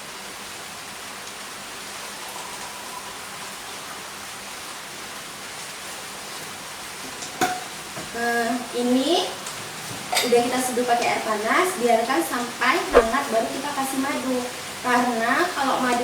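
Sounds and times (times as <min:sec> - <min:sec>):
sharp knock: 0:12.9 - 0:13.2
water hissing: 0:12.9 - 0:13.2.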